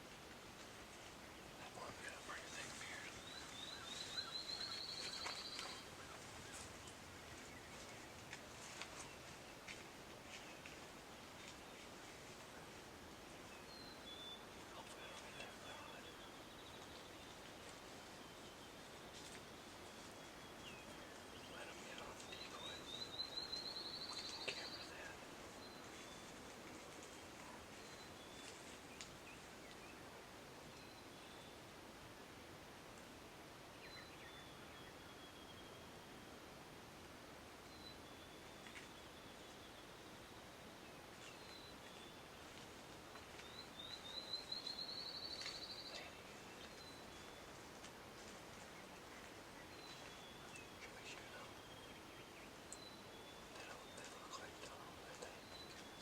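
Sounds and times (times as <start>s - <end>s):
faint outdoor background: 0.0s - 56.0s
songbird trill: 1.2s - 12.8s, 13.4s - 31.7s, 33.7s - 36.4s, 37.6s - 56.0s
faint clicks: 4.6s - 7.0s, 28.4s - 29.9s, 45.4s - 51.6s, 53.5s - 56.0s.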